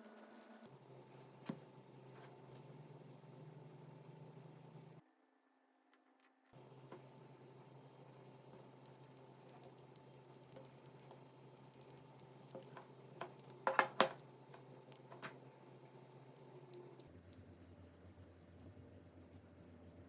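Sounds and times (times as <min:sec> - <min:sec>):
low steady hum: 0:06.6 - 0:20.0
clicks and taps of small parts: 0:12.5 - 0:14.2.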